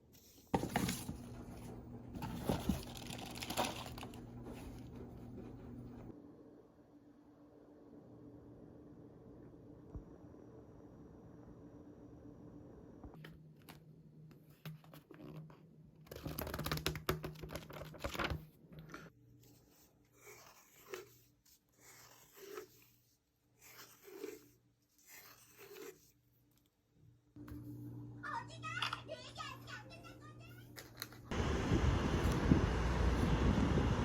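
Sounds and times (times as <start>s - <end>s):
rustling and crinkling: 0.0s - 6.1s.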